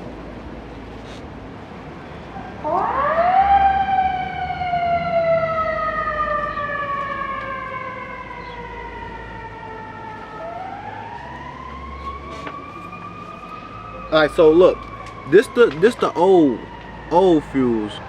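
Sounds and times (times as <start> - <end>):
emergency siren wailing: 1.9 - 18.0.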